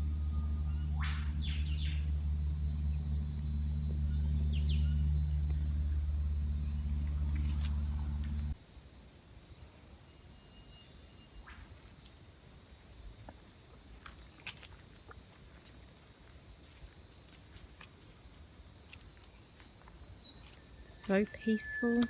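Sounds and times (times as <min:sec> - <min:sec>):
birds chirping: 0:00.0 - 0:08.6, 0:19.6 - 0:22.0
high bird pipping: 0:00.0 - 0:08.6, 0:20.9 - 0:22.0
steady low hum: 0:00.0 - 0:08.6.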